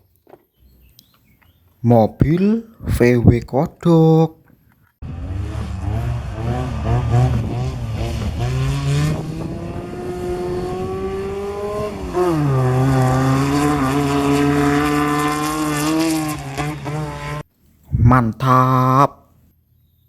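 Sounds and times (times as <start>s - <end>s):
car engine revving: 5.0s - 17.4s.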